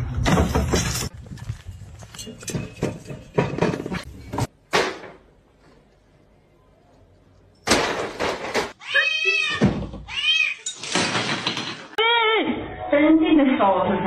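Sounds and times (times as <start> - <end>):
cat meowing: 8.8 - 10.6.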